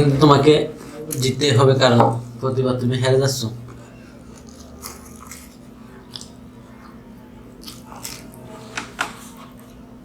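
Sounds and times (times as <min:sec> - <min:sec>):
chewing and biting flatbread: 0:04.2 - 0:09.9.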